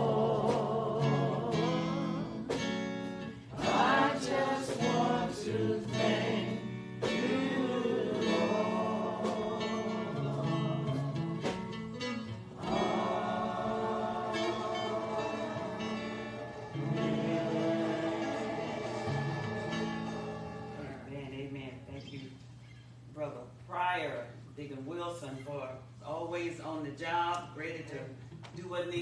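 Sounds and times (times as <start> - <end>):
gospel choir singing: 0.0 - 21.1
instrumental accompaniment: 0.0 - 21.1.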